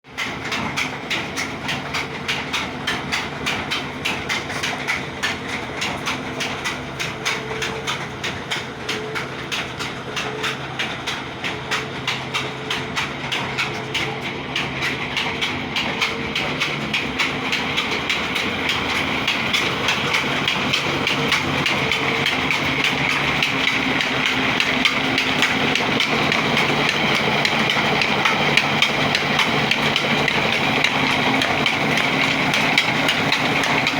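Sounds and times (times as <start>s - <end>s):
diesel engine under load: 0.1s - 33.9s.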